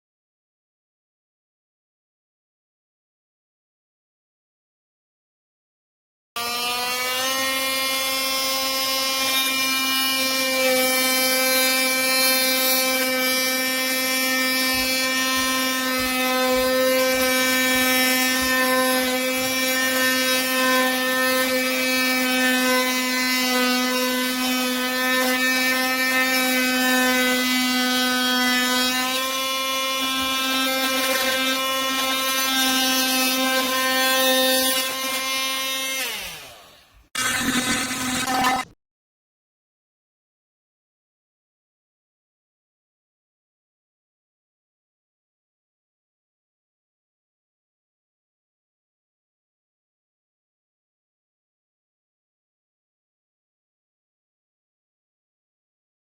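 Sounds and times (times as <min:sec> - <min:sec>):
oscillating multi-tool buzzing whine: 0:06.4 - 0:38.8.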